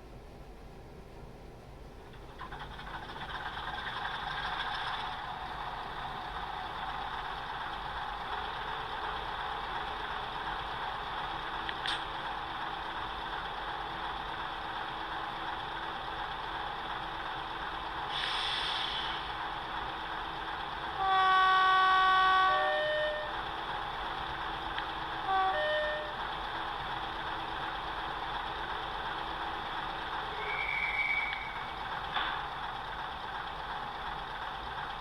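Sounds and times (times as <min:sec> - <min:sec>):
diesel locomotive engine running: 0:00.0 - 0:35.0
brief hiss: 0:18.1 - 0:19.3
two-tone train horn: 0:20.9 - 0:23.5, 0:25.2 - 0:26.4.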